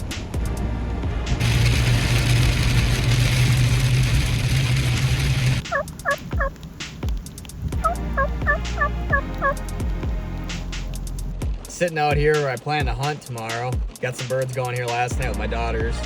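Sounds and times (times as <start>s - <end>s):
rain: 0.0s - 14.9s
turkey gobbling: 5.6s - 6.6s, 7.8s - 9.6s.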